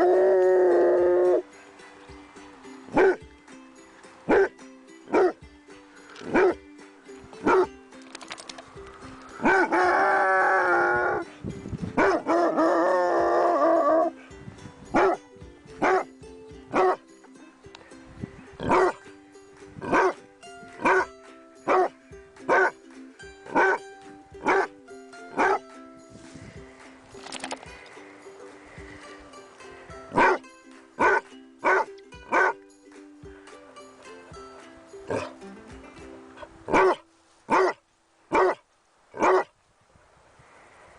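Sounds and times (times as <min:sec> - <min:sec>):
dog howling: 0:00.0 - 0:01.4
background music: 0:00.0 - 0:37.7
dog barking: 0:03.0 - 0:03.2, 0:04.3 - 0:04.5, 0:05.1 - 0:05.4, 0:06.3 - 0:06.6, 0:07.4 - 0:07.7, 0:15.0 - 0:15.2, 0:18.7 - 0:19.0, 0:19.9 - 0:20.2, 0:20.8 - 0:21.1, 0:22.5 - 0:22.7, 0:23.5 - 0:23.8, 0:24.4 - 0:24.7, 0:25.4 - 0:25.6, 0:30.2 - 0:30.4, 0:31.0 - 0:32.6, 0:36.7 - 0:38.6, 0:39.2 - 0:39.5.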